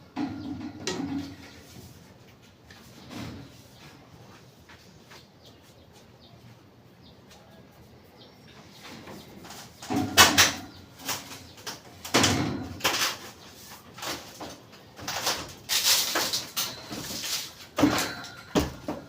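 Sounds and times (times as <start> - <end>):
knocks bangs and scraping clatter: 0.0 - 4.0, 8.8 - 19.0.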